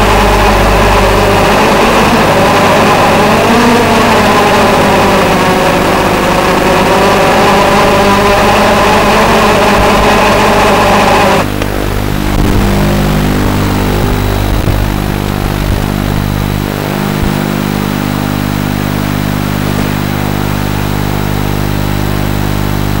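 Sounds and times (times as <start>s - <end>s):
drone motors humming: 0.0s - 23.0s.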